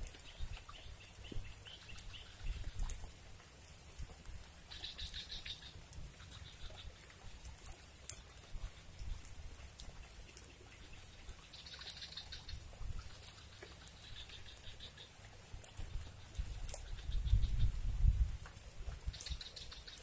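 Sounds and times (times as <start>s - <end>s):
light rain pattering: 0.0s - 20.0s
small drips: 0.0s - 20.0s
water trickling: 0.0s - 20.0s
low rumble on microphone: 15.6s - 19.2s.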